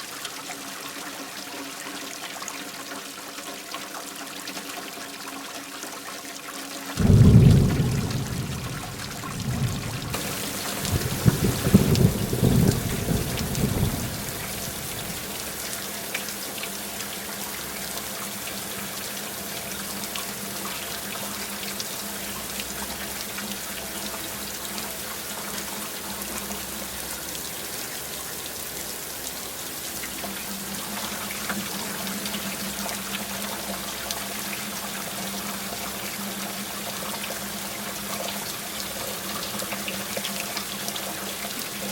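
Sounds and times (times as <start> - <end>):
rumble of thunder: 7.0 - 15.4
heavy rain falling: 7.0 - 21.4.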